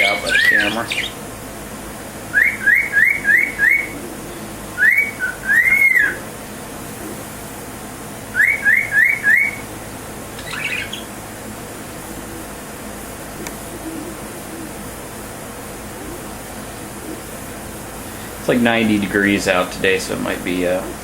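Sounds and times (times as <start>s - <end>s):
cockatiel whistling: 2.3s - 6.2s, 8.4s - 9.6s, 10.4s - 11.1s.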